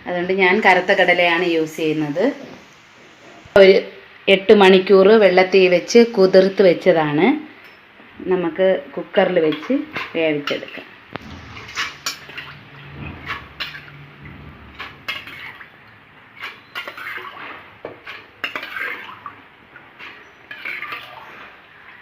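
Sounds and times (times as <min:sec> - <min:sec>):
utensils clinking against cookware: 0:09.5 - 0:19.4, 0:20.0 - 0:21.6.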